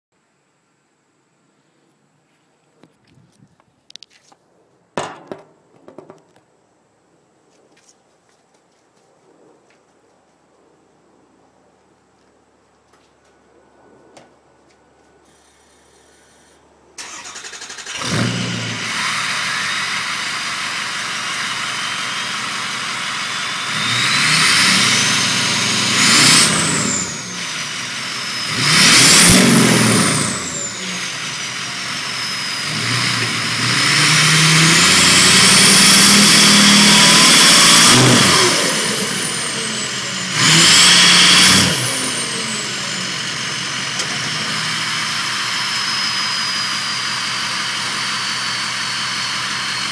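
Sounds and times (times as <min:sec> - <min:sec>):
engine starting: 0:17.0 - 0:19.6
diesel engine revving: 0:17.0 - 0:49.9.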